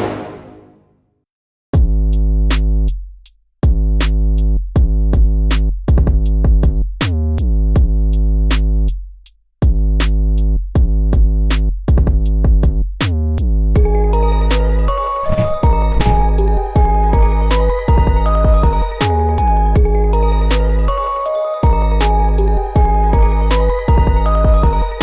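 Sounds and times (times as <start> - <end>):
drum machine beat: 4.8 - 6.9, 10.8 - 12.9, 14.6 - 21.0, 21.6 - 25.0
deep synth bass: 9.7 - 21.0, 21.6 - 25.0.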